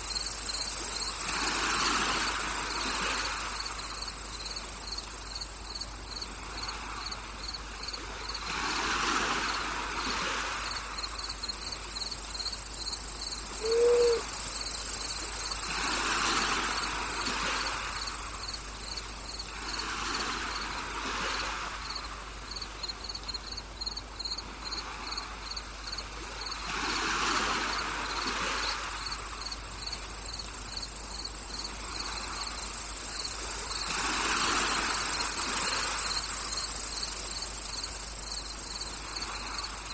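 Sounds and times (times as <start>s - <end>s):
crickets trilling: 0.0s - 39.9s
soft swells of noise: 0.0s - 39.9s
pulsed chirping: 13.5s - 14.4s
short low call: 13.6s - 14.3s.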